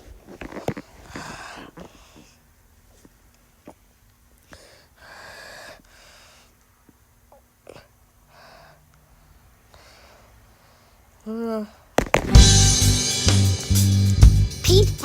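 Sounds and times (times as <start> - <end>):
faint breathing: 0.6 - 3.2, 4.4 - 7.0, 7.6 - 12.0.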